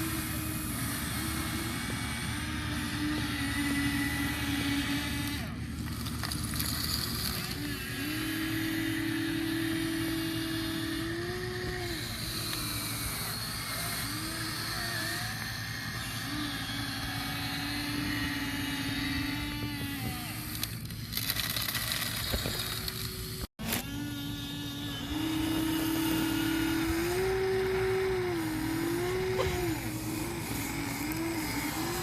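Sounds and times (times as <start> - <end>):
small electric motors whining: 0.0 - 32.0.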